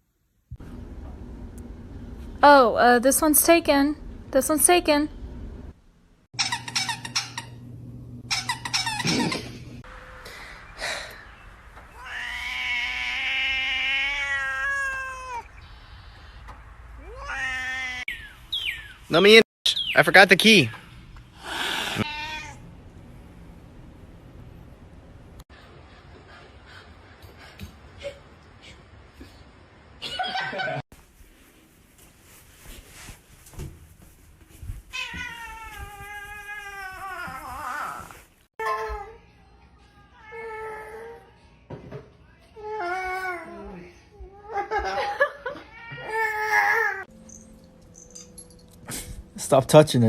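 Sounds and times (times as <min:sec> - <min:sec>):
cat meowing: 0:11.9 - 0:15.6, 0:17.0 - 0:18.1, 0:22.0 - 0:22.6, 0:34.9 - 0:38.1.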